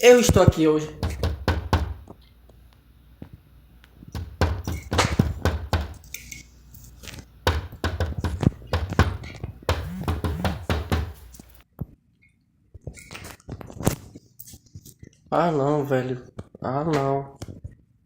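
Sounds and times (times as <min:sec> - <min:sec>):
knocking on a door: 0:01.0 - 0:02.1, 0:04.1 - 0:06.1, 0:07.4 - 0:11.5.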